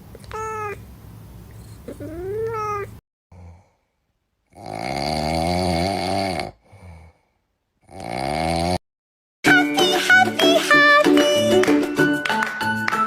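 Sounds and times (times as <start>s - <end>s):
cat meowing: 0.2s - 0.8s, 1.8s - 3.0s.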